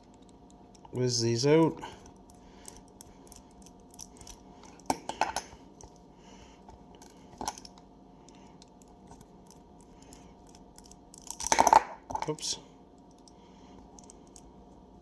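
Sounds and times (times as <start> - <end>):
small metallic clicks of screws: 7.0 - 11.7.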